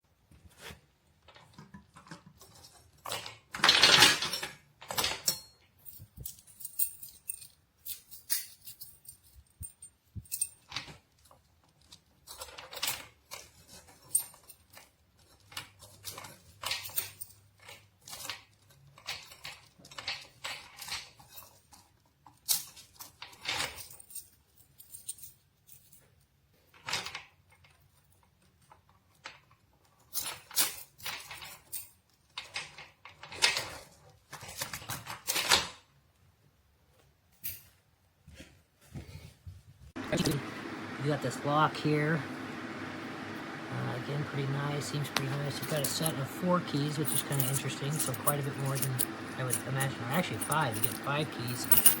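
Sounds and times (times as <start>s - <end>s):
chain and padlock clinking: 5.2s - 10.9s, 12.3s - 26.2s, 44.8s - 52.0s.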